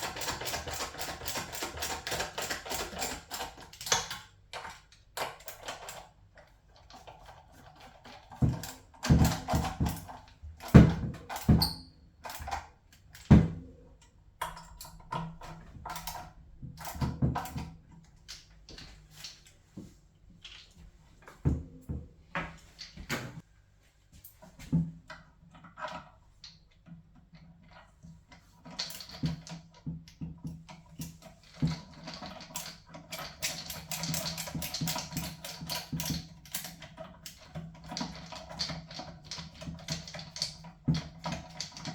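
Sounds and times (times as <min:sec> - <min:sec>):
hand tools clicking and tapping: 0:00.0 - 0:06.0.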